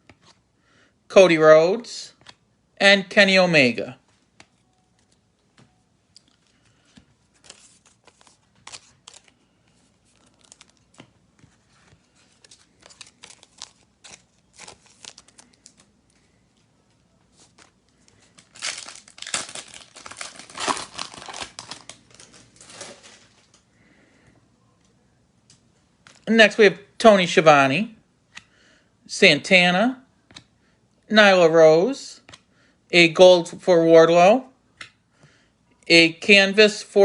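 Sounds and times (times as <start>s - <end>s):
cards rustling and clicking: 4.1s - 23.6s
foil wrapper crinkling and tearing: 7.3s - 9.4s, 12.3s - 15.9s, 17.4s - 23.6s.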